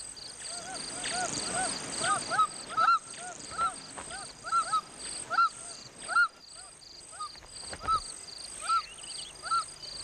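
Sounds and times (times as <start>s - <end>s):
insect trill: 0.0s - 10.0s
bird calling: 0.4s - 10.0s.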